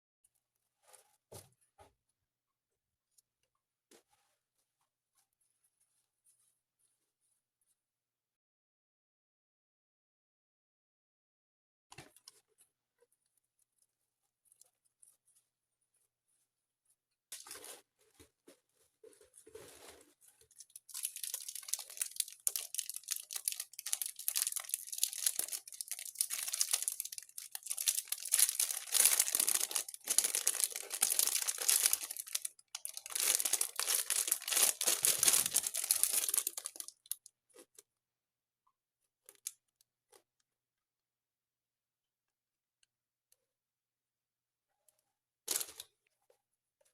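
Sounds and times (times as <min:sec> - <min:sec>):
crinkling and rustling handling noise: 0:11.9 - 0:37.9, 0:44.8 - 0:46.9.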